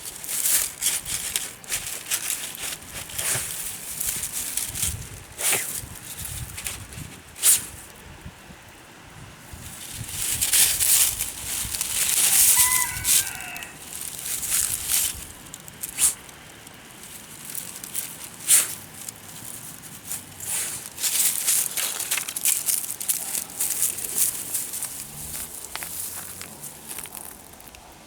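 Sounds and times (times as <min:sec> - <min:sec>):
dog rustling through dry litter: 0:00.0 - 0:07.9, 0:09.6 - 0:27.8
twigs snapping: 0:00.0 - 0:07.9, 0:09.8 - 0:27.8
high-pitched falling call: 0:12.4 - 0:13.8.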